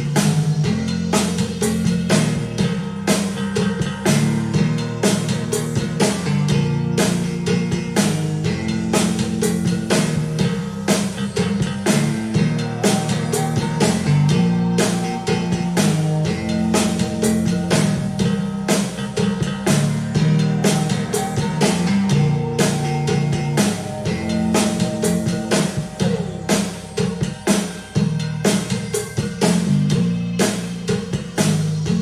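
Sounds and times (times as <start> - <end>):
instrumental rock-pop music: 0.0 - 32.0.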